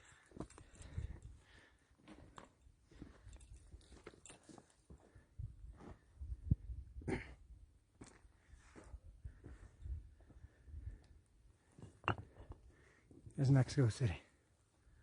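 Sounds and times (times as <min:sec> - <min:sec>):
wind rumble on microphone: 0:05.4 - 0:07.1.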